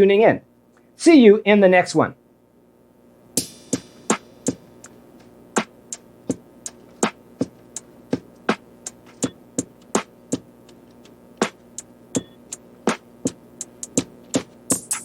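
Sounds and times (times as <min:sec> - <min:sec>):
dry percussive hits: 0:03.4 - 0:15.0.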